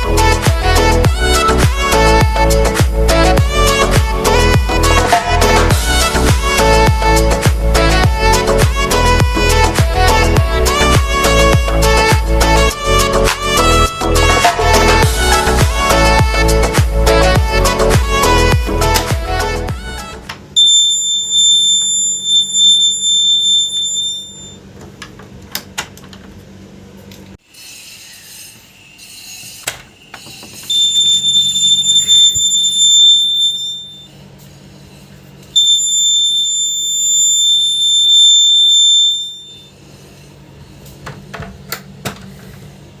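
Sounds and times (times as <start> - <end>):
shrill buzzer beep: 20.6 - 24.6, 29.0 - 34.3, 35.5 - 39.8.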